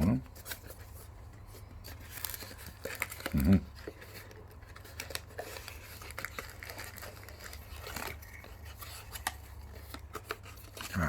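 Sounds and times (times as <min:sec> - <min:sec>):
cardboard packaging being handled: 0:00.0 - 0:11.0.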